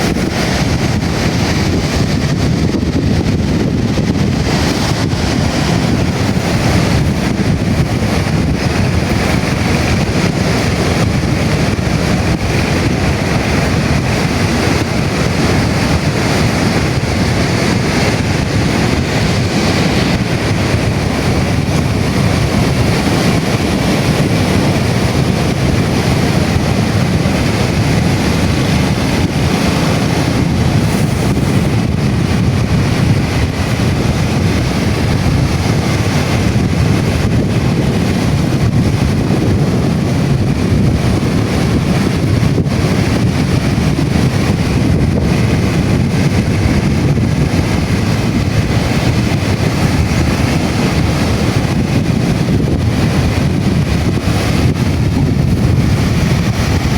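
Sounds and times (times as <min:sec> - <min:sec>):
waves washing on sand: 0:00.0 - 0:56.9
wind buffeting microphone: 0:00.0 - 0:56.9.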